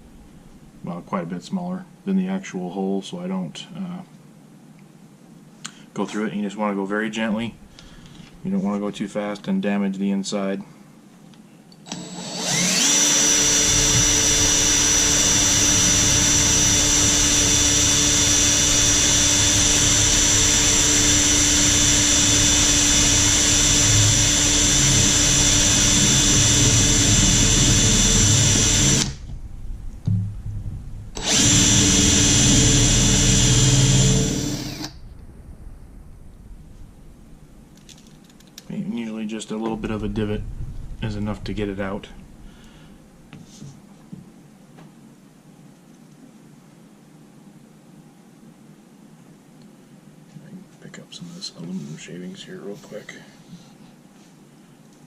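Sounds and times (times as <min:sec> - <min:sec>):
electric drill drilling aluminum: 0:11.9 - 0:29.2, 0:31.2 - 0:35.0.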